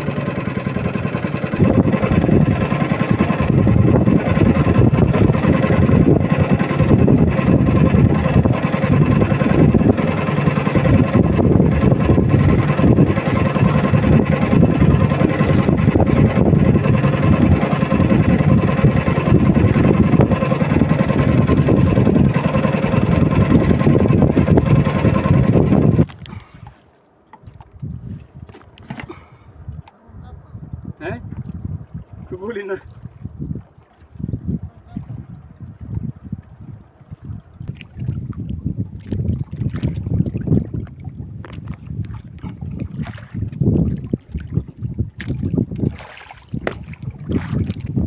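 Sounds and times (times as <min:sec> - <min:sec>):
outboard motor running: 0:00.0 - 0:27.7, 0:28.5 - 0:29.8, 0:31.0 - 0:48.0.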